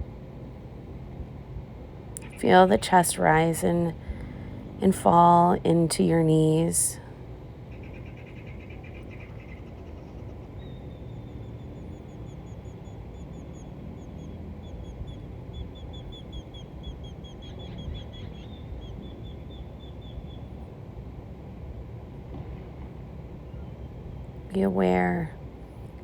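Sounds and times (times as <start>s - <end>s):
steady low rumble: 0.0s - 7.7s.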